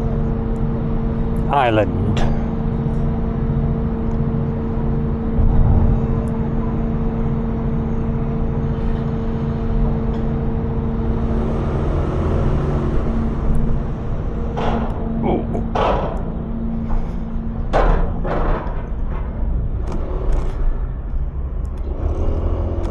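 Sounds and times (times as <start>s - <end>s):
engine running steadily: 0.0s - 22.9s.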